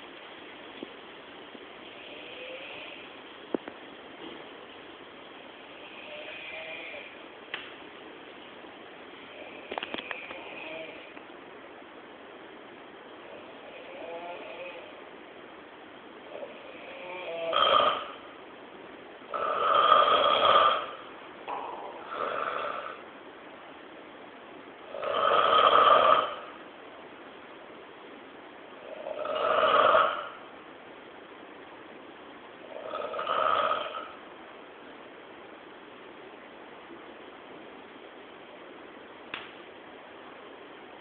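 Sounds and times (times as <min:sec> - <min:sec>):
faint steady hiss: 0:00.0 - 0:41.0
person snoring: 0:19.3 - 0:23.0.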